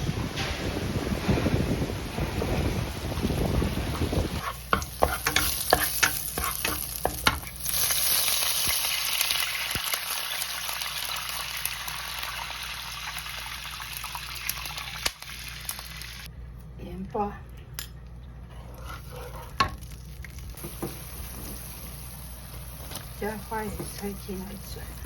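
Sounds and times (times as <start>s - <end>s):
wind rumbling on microphone: 0.0s - 4.4s
food sizzling in a pan: 4.4s - 16.3s, 19.0s - 25.0s.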